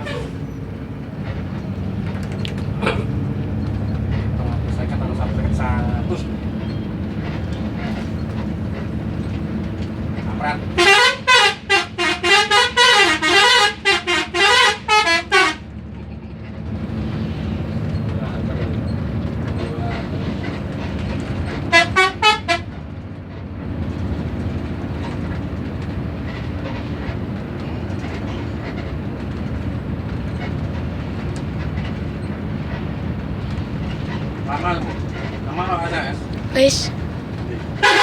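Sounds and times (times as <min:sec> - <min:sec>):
bus musical horn: 0:00.0 - 0:00.4, 0:10.2 - 0:15.9, 0:21.2 - 0:22.9, 0:37.6 - 0:38.0
bus engine and road rumble: 0:00.0 - 0:38.0
bus horn toots: 0:10.3 - 0:15.8, 0:21.2 - 0:22.8, 0:37.6 - 0:38.0.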